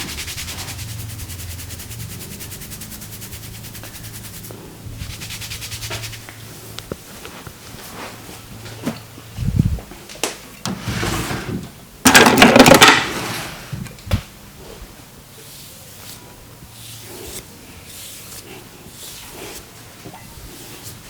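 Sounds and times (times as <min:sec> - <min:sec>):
rapid hand massage strokes: 0:00.0 - 0:07.3, 0:15.4 - 0:21.0.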